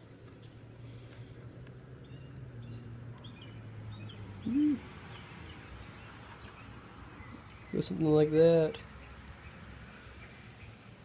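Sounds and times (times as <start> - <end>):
low coo-like bird call: 4.4 - 5.2.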